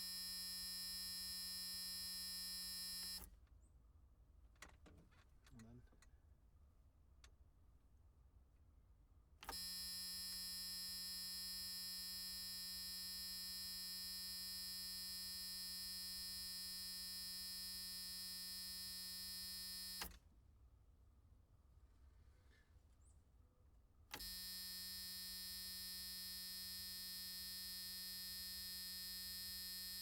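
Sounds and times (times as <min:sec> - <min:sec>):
electric buzzer: 0:00.0 - 0:03.3, 0:09.4 - 0:20.1, 0:24.1 - 0:30.0.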